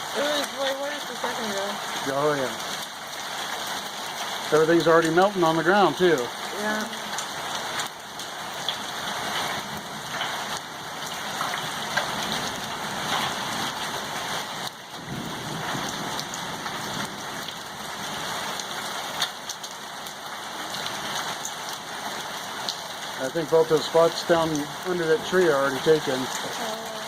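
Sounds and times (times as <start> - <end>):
hail impacts ticking: 0.0 - 27.0
heavy rain pattering: 0.0 - 27.0
low rumble of thunder: 14.9 - 18.5.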